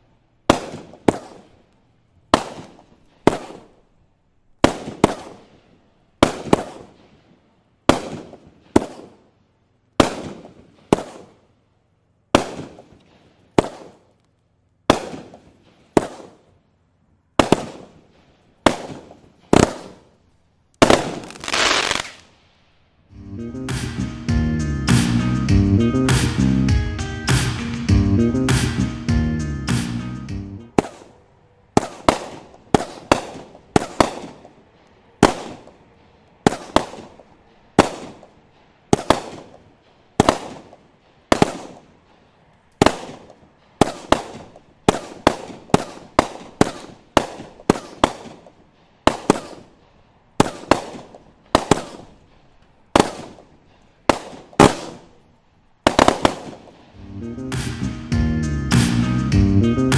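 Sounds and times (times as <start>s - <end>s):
firework cake bangs: 0.5s - 1.5s, 6.2s - 7.0s, 7.9s - 9.3s, 10.0s - 11.4s, 13.6s - 14.1s, 14.9s - 16.4s, 18.7s - 20.1s
music: 23.1s - 30.7s, 57.0s - 59.9s.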